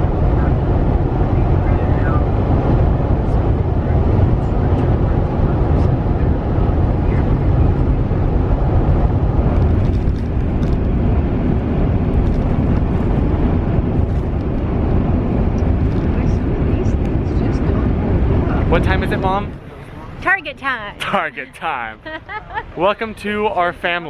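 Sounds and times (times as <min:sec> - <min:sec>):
car engine: 0:00.0 - 0:24.0
road noise: 0:00.0 - 0:24.0.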